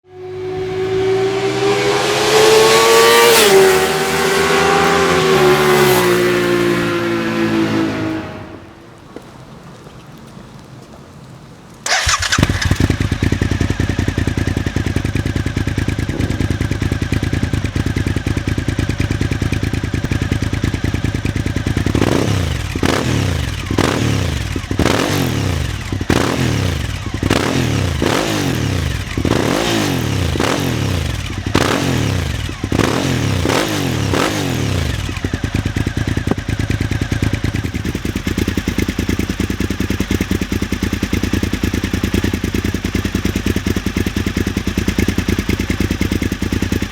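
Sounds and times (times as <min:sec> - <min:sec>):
motorcycle throttle blips: 0:00.2 - 0:11.0, 0:11.8 - 0:46.9
motorcycle engine idling: 0:11.9 - 0:46.9.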